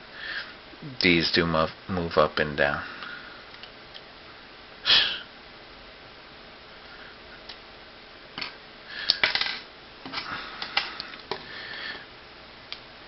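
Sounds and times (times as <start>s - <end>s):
plastic parts clicking and rustling: 8.4s - 11.5s.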